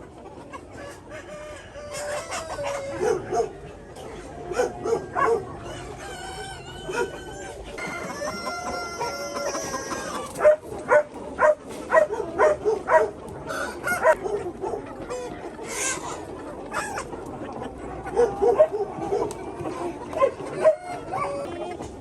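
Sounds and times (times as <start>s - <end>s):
chickens clucking: 0.0s - 22.0s
rooster crowing: 5.9s - 10.2s, 13.5s - 14.2s.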